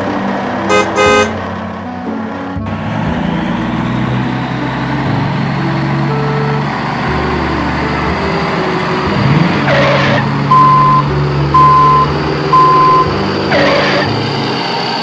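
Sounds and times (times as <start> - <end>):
engine hum: 0.0 - 15.0
reversing alarm beeping: 9.2 - 14.1.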